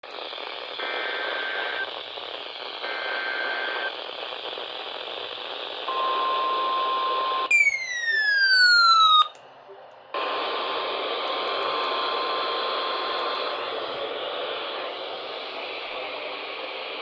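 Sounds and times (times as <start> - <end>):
steady alarm tone: 7.5 - 9.3.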